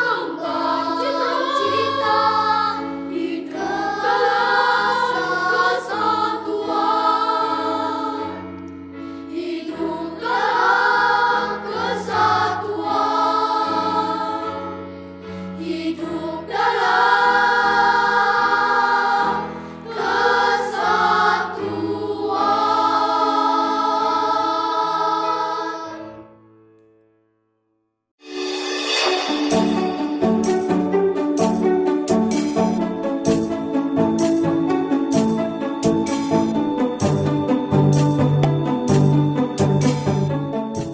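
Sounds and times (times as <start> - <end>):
children's choir singing: 0.0 - 8.6, 9.2 - 26.3.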